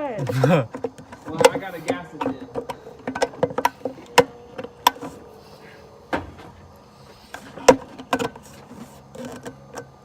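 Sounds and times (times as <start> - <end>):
tools clicking and knocking: 0.4 - 5.1.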